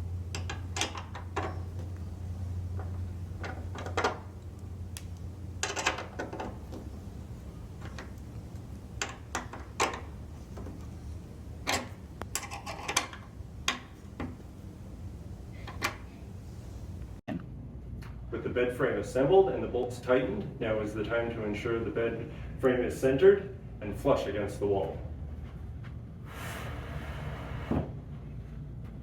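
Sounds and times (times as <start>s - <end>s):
low hum: 0.0s - 17.9s.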